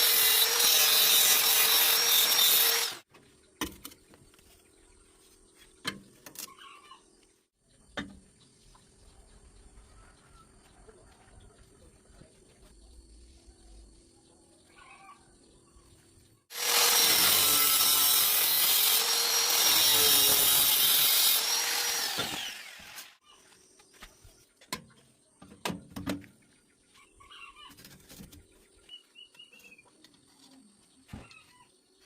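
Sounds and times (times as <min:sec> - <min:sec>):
handheld power tool running: 0:00.0 - 0:03.1, 0:16.5 - 0:23.2.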